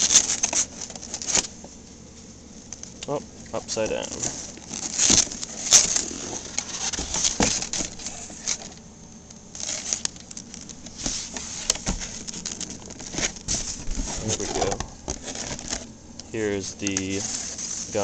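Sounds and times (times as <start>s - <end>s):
cardboard rustling and scraping: 0.0s - 2.3s, 3.6s - 8.8s, 9.5s - 18.0s.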